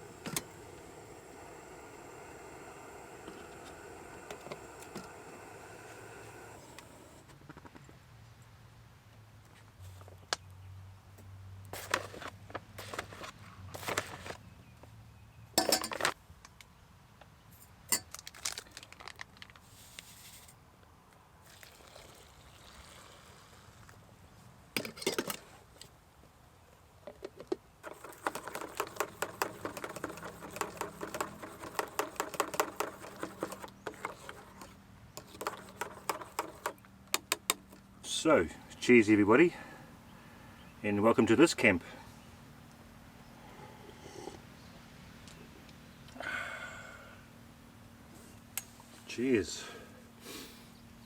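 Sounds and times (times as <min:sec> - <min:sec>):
cups and utensils clinking: 0:15.6 - 0:16.2.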